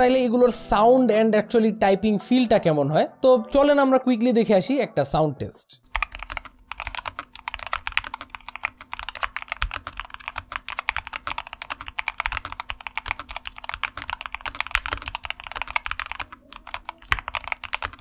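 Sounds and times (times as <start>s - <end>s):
keyboard typing: 5.9s - 18.0s.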